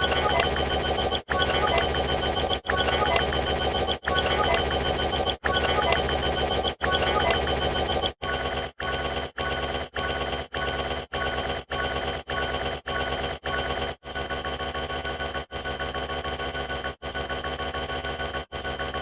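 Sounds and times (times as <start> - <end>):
layered sound effects: 0.0 - 8.0
ringing alarm-like tones: 0.0 - 8.2.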